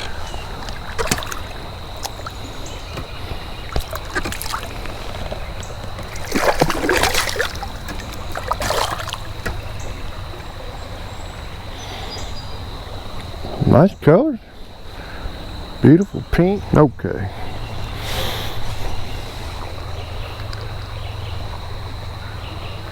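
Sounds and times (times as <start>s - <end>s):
creek water splashing: 0.0s - 22.9s.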